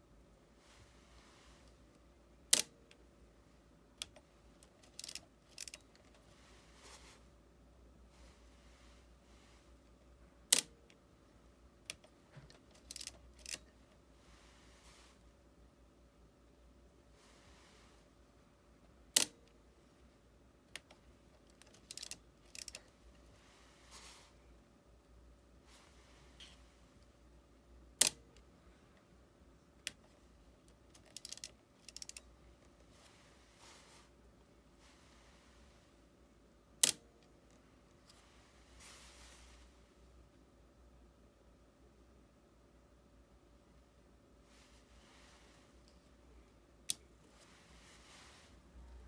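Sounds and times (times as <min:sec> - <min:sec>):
light mechanical clicks: 0:01.7 - 0:03.0, 0:04.0 - 0:06.2, 0:10.5 - 0:11.0, 0:11.8 - 0:13.8, 0:19.1 - 0:19.6, 0:20.7 - 0:23.0, 0:28.0 - 0:29.1, 0:29.8 - 0:32.9, 0:36.8 - 0:38.2.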